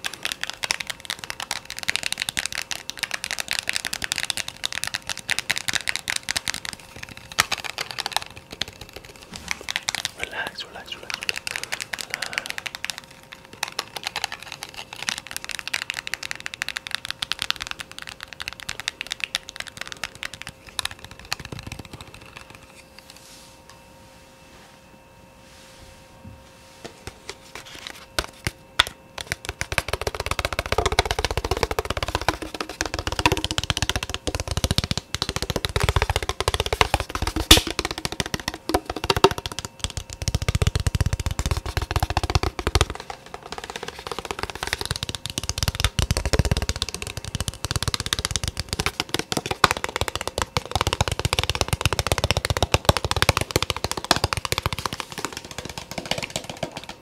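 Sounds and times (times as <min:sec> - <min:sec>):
fast continuous tapping: 0:00.0 - 0:22.8, 0:27.7 - 0:57.0.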